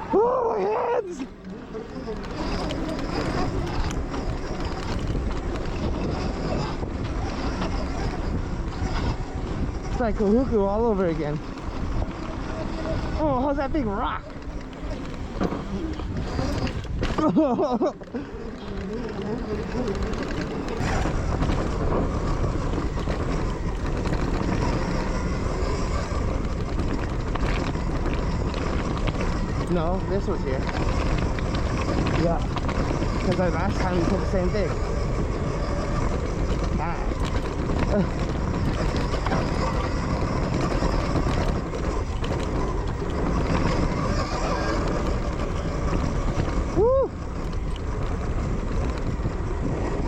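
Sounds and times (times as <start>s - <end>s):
bike rattling over ground: 0.0s - 50.0s
electric motor whine: 0.0s - 50.0s
wind and tyres rumbling: 0.0s - 50.0s
wind rush: 2.1s - 17.3s.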